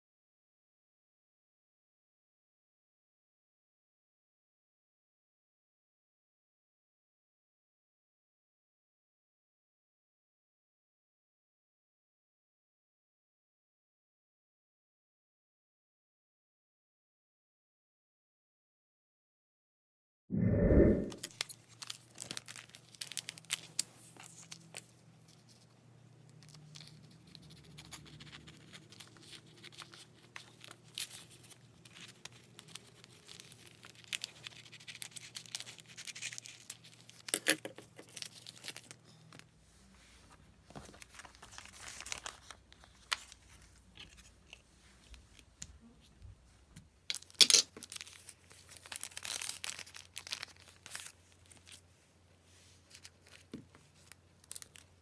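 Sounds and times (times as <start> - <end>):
packaging crinkling and tearing: 21.7 - 25.0, 26.4 - 39.0, 40.9 - 44.6, 47.1 - 51.8, 52.8 - 55.0.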